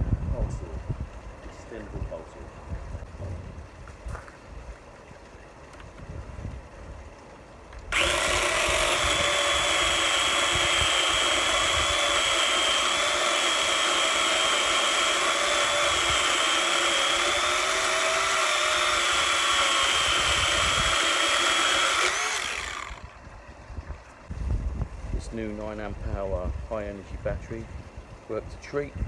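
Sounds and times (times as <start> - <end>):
electric pole saw whining: 7.9 - 23.2.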